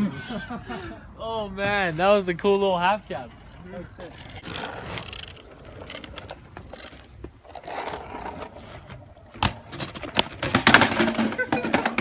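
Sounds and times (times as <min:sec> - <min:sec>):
bike clattering impact: 0:09.3 - 0:12.0.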